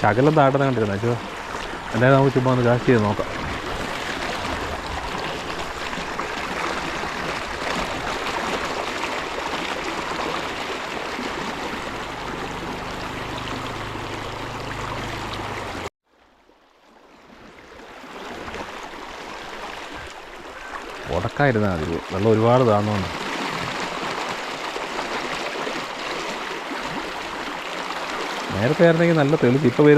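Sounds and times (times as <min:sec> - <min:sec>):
water rushing over waterfall: 0:00.0 - 0:15.9
faint running water: 0:00.0 - 0:29.9.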